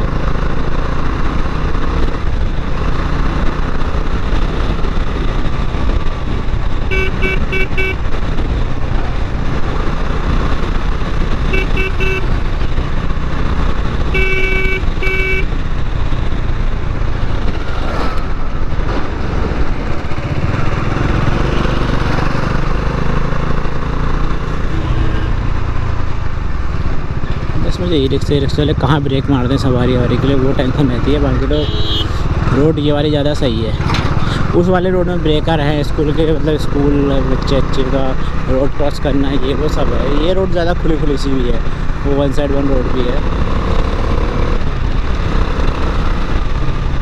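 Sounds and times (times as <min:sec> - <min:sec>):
motorcycle engine running: 0:00.0 - 0:47.0
vehicle horn short beeps: 0:06.9 - 0:08.0, 0:11.5 - 0:12.4, 0:14.1 - 0:15.5, 0:31.6 - 0:32.1.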